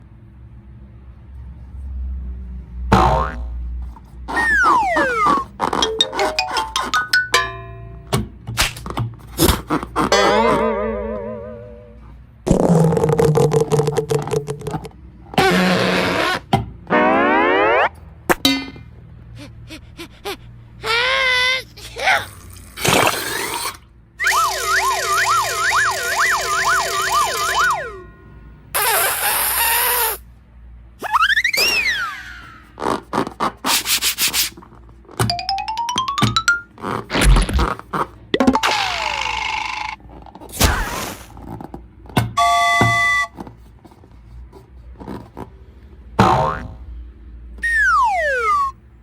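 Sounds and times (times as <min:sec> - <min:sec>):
electronic siren-like warble: 0:04.3 - 0:06.7, 0:16.9 - 0:18.0, 0:24.2 - 0:28.2, 0:47.6 - 0:48.8
rising swoop: 0:16.9 - 0:18.0.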